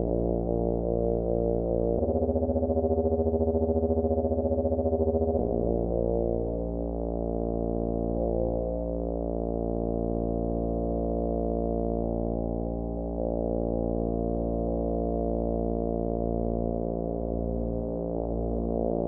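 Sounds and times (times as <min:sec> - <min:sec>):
synthesizer drone: 0:00.0 - 0:19.0.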